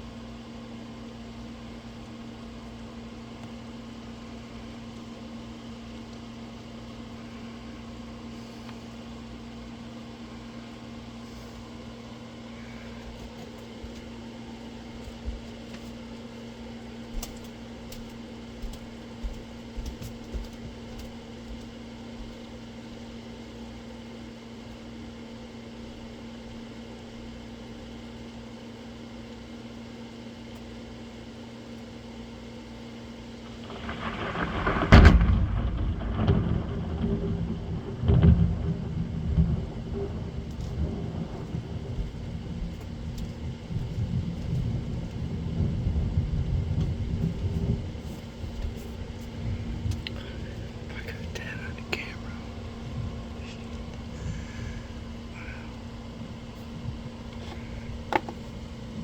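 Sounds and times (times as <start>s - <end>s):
low hum: 33.3s - 59.0s
thunderclap rumbling: 33.5s - 59.0s.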